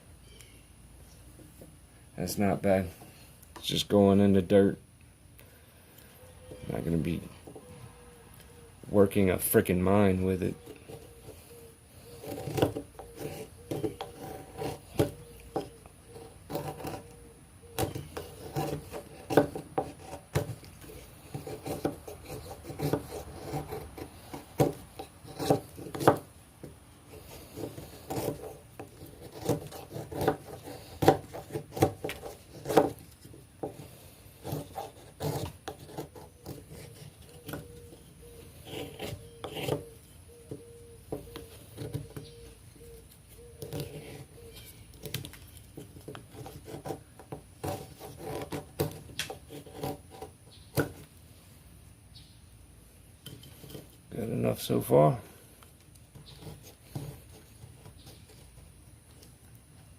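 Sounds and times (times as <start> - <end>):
knife whittling wood: 10.5 - 51.1.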